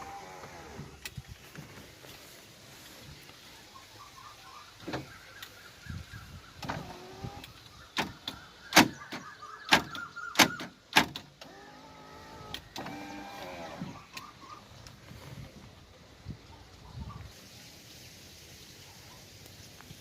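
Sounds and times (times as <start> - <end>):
power window motor whine: 0.0 - 1.1, 11.4 - 14.2.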